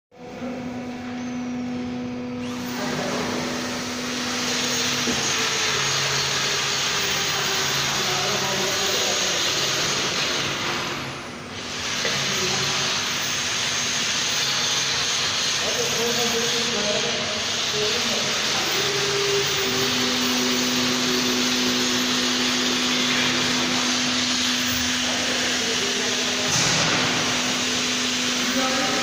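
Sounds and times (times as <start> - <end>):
low machine hum: 0.1 - 29.0
loud machine hissing: 0.6 - 29.0.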